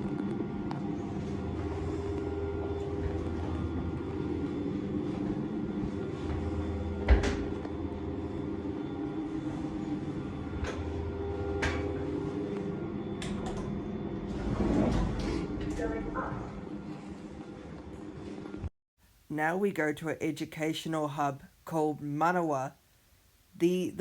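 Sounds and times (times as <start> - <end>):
lift machinery hum: 0.0 - 18.7.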